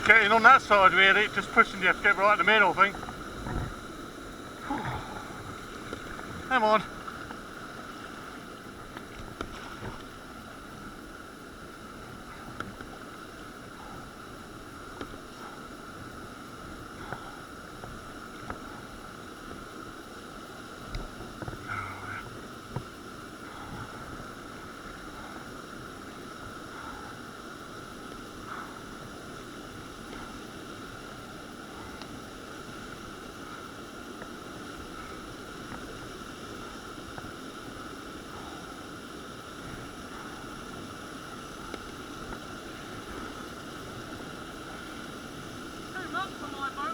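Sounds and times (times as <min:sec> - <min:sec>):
river whitewater rushing: 0:00.0 - 0:08.9, 0:32.5 - 0:46.9
faint ticks: 0:05.4 - 0:07.5, 0:08.8 - 0:20.0, 0:20.7 - 0:29.1, 0:29.7 - 0:36.0, 0:36.6 - 0:37.6, 0:39.5 - 0:45.2.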